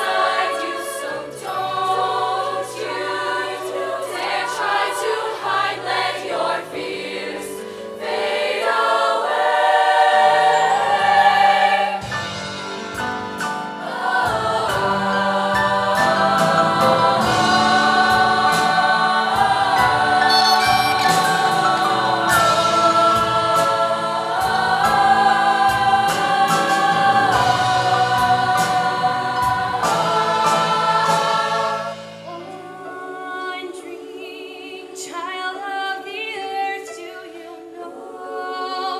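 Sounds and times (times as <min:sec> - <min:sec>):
choir singing in harmony: 0:00.0 - 0:38.9
live band playing: 0:12.0 - 0:32.4
drum hits: 0:12.0 - 0:32.5.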